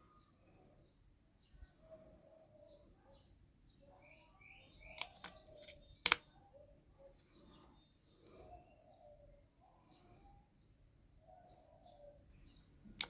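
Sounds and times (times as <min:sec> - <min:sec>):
small birds chirping: 0:00.0 - 0:13.0
sharp clicks: 0:04.9 - 0:06.2.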